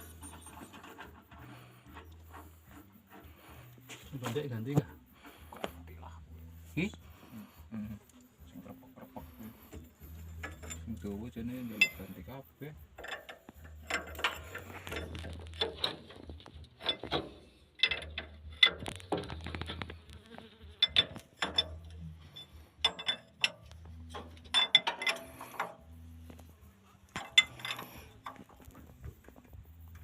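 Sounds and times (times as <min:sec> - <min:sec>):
metal tools clinking: 0:00.0 - 0:04.9, 0:08.2 - 0:16.2, 0:16.8 - 0:18.8, 0:20.9 - 0:26.4, 0:27.0 - 0:28.8.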